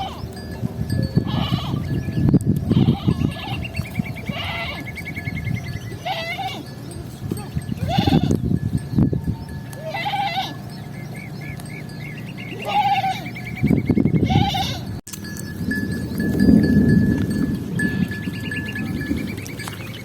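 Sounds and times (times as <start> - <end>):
animal bell ringing: 0.0 - 20.0
sheep bleating: 1.2 - 1.8, 2.7 - 3.7, 4.3 - 4.9, 6.0 - 6.7, 7.8 - 8.4, 9.8 - 10.7, 12.5 - 13.4, 14.2 - 14.9.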